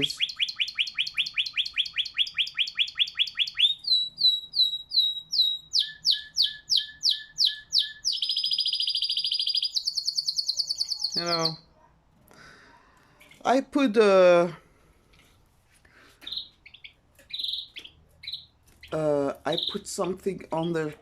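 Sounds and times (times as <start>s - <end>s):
canary singing: 0.0s - 11.8s, 16.2s - 21.0s.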